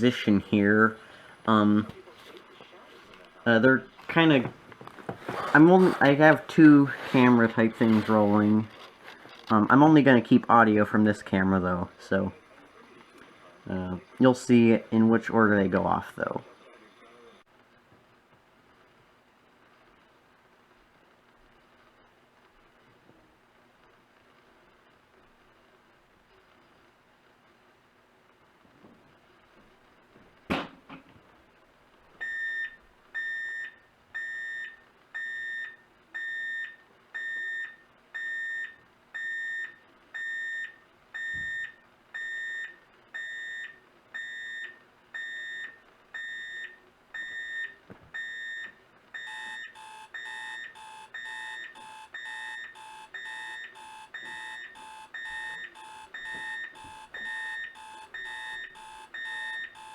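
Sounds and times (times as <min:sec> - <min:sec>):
alarm clock beeping: 0:32.2 - 0:59.9
lower faster alarm beeping: 0:32.2 - 0:59.9.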